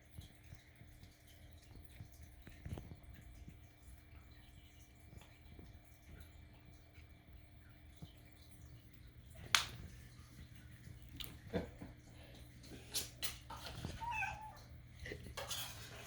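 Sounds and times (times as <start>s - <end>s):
kitten meowing: 14.0s - 14.6s.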